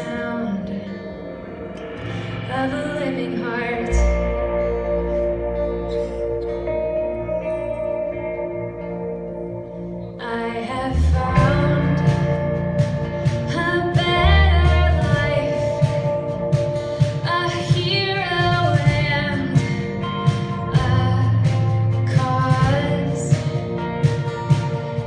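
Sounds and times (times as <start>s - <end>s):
woman singing a pop ballad: 0.0s - 5.2s, 10.2s - 24.7s
band accompaniment: 11.2s - 25.0s.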